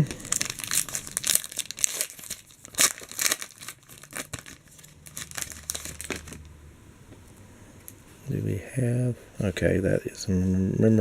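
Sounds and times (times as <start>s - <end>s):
wrapper tearing and crinkling: 0.0s - 6.5s.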